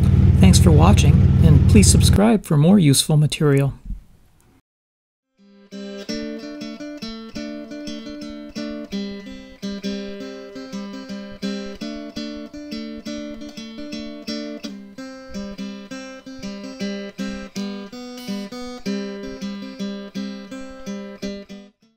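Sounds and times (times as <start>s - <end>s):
strummed guitar music: 5.4s - 21.7s.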